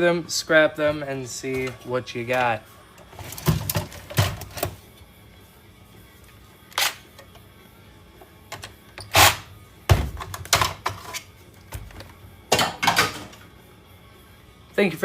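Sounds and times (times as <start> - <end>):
knocks and clatters of parts: 3.2 - 4.8, 9.9 - 13.4.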